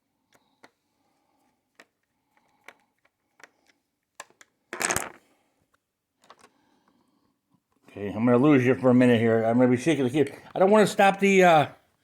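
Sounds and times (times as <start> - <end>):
rustling clatter: 4.8 - 5.2.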